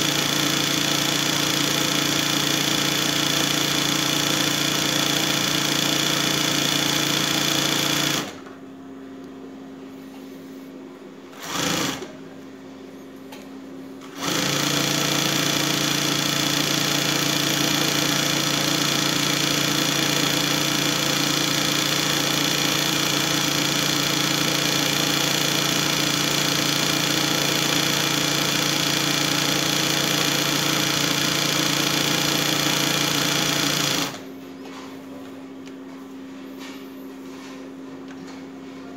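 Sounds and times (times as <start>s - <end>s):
sewing machine running: 0.0s - 8.5s, 11.3s - 12.2s, 14.0s - 34.3s.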